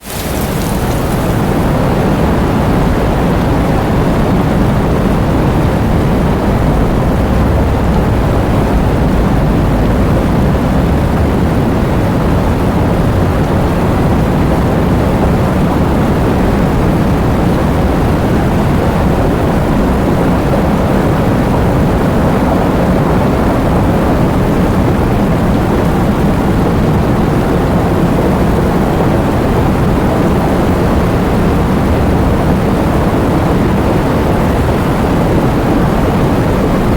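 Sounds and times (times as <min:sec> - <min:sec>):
heavy rain pouring: 0:00.0 - 0:36.9.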